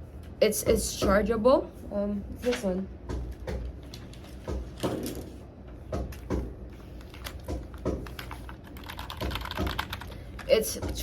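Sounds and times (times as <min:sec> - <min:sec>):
keyboard knocks and clicks: 0:05.9 - 0:06.6, 0:07.2 - 0:10.1, 0:10.7 - 0:11.0.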